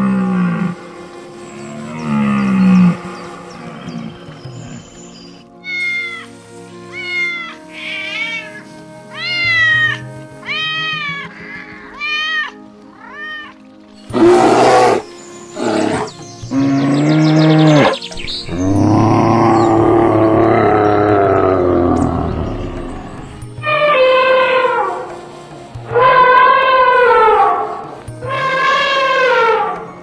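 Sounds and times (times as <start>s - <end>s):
rough animal calls: 0.0s - 25.2s, 25.8s - 30.0s
background music: 0.0s - 30.0s
cat meowing: 5.6s - 6.3s, 6.9s - 8.5s, 9.2s - 13.5s.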